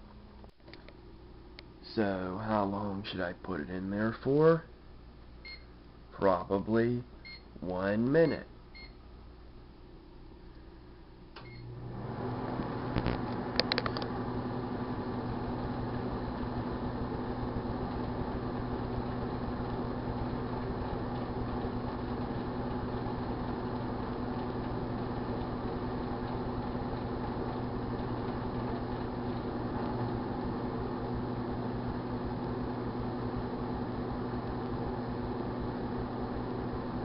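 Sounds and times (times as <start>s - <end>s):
microwave oven humming: 10.5s - 37.0s.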